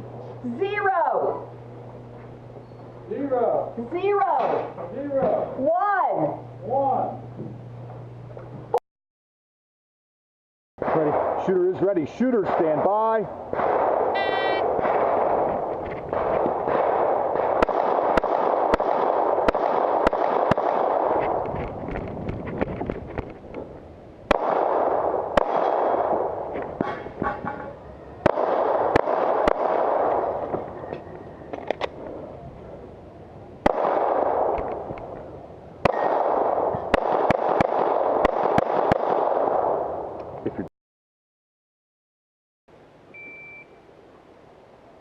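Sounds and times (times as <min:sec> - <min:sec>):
pistol shots: 0:10.8 - 0:21.4, 0:24.3 - 0:27.1, 0:28.2 - 0:30.7, 0:33.6 - 0:34.9, 0:35.8 - 0:40.1
shot timer beep: 0:43.1 - 0:43.8.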